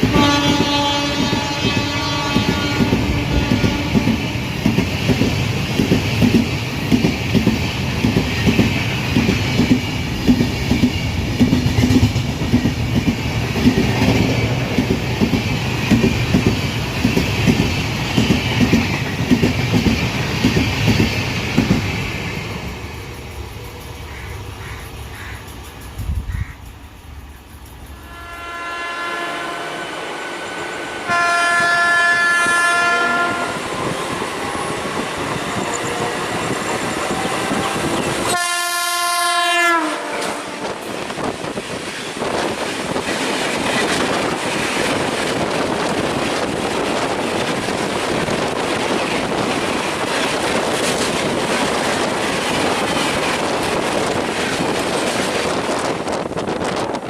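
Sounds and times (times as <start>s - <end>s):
train horn blasts: 0.0s - 4.7s, 27.9s - 34.9s, 35.5s - 41.0s
train wheels on rail: 0.0s - 57.0s.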